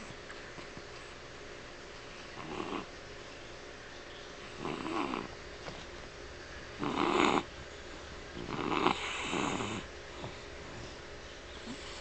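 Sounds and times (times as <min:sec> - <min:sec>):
dog snoring: 0:02.3 - 0:02.9, 0:04.5 - 0:05.3, 0:06.8 - 0:07.5, 0:08.4 - 0:10.4.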